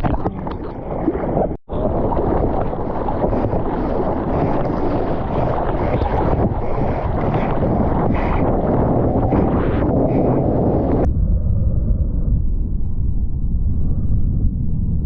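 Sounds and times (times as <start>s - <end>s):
ocean surf: 0.0s - 11.0s
wind buffeting microphone: 0.0s - 15.0s.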